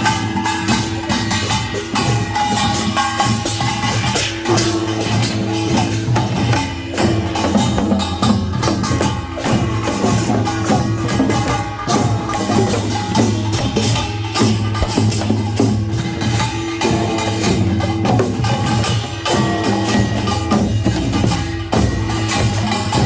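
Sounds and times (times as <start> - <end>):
fast dense percussion strikes: 0.0 - 23.0
steady held tones: 0.0 - 23.0.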